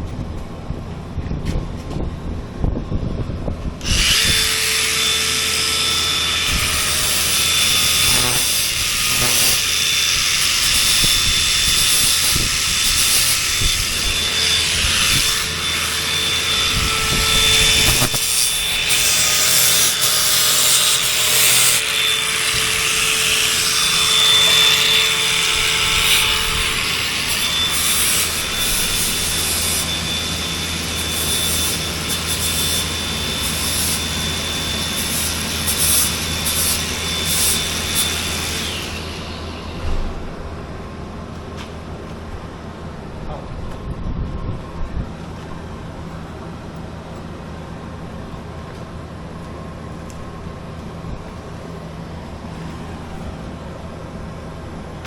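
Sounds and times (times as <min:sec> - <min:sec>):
power tool grinding with whine: 0:03.8 - 0:40.2.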